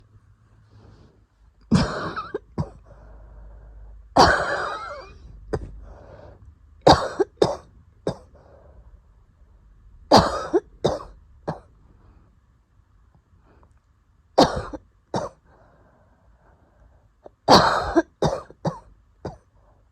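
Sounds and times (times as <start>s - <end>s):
person coughing harshly: 1.7s - 2.9s, 4.2s - 5.8s, 6.8s - 8.4s, 10.1s - 11.7s, 14.4s - 15.4s, 17.3s - 19.5s
wheezy breaths: 2.8s - 4.1s, 5.7s - 6.5s, 8.3s - 9.0s, 15.4s - 17.2s.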